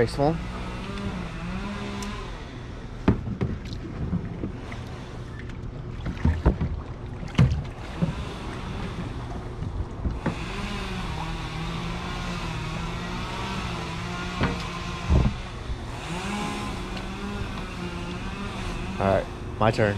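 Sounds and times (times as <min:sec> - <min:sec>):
motorboat engine hum: 0:00.0 - 0:19.9
knocks and thumps against water: 0:03.0 - 0:12.1, 0:14.2 - 0:15.6
wind noise: 0:15.0 - 0:15.8.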